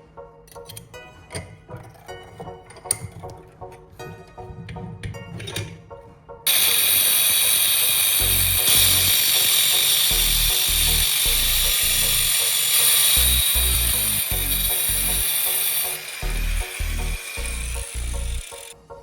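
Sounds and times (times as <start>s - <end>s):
power tool whining: 6.5s - 18.8s.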